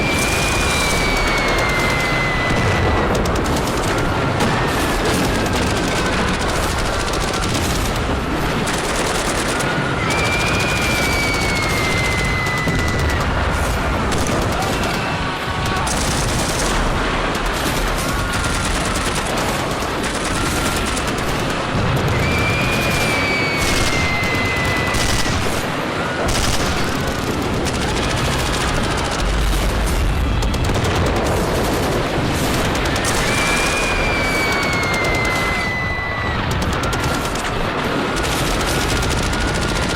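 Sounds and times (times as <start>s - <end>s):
long high wail: 0.0s - 7.5s, 9.1s - 16.0s, 22.1s - 26.2s, 32.9s - 37.4s
machine-gun fire: 0.0s - 39.9s.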